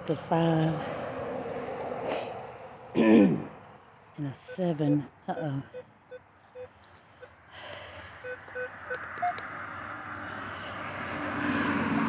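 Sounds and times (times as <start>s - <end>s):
metal detector beeps: 4.5s - 7.4s, 8.2s - 9.4s.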